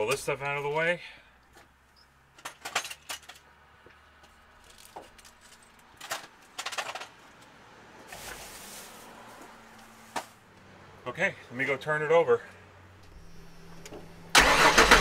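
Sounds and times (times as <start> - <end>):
tools clinking and knocking: 2.3 - 7.5
short rustle: 8.0 - 10.4.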